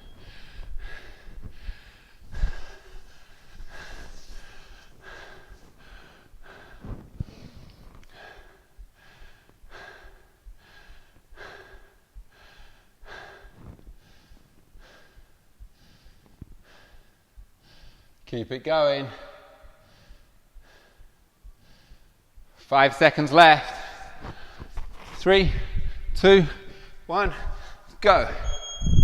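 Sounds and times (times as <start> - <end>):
man breathing hard: 0.0 - 18.2, 19.1 - 22.7, 23.6 - 28.0.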